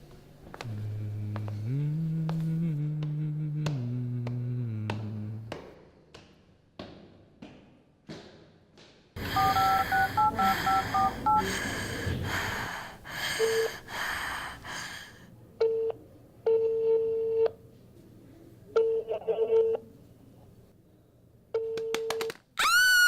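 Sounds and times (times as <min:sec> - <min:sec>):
phone ringing tone: 0:09.2 - 0:11.5
phone keypad dual-tone beeps: 0:09.3 - 0:11.4.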